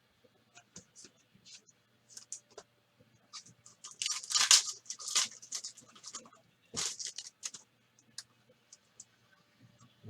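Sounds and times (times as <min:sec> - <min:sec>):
trading cards rustling and scraping: 0:03.3 - 0:07.6.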